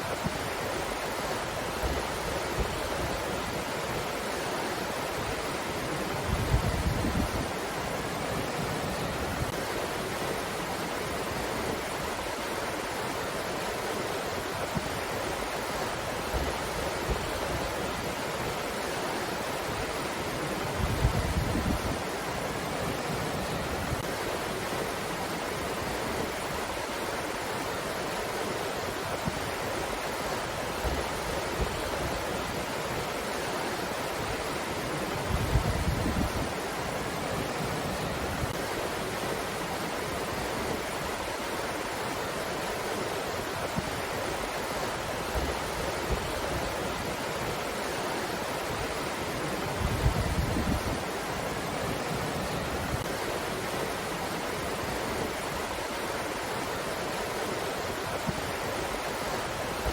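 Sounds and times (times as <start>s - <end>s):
steady breeze: 0.0s - 59.9s
wind buffeting microphone: 20.7s - 22.0s, 35.2s - 36.6s, 49.6s - 53.1s.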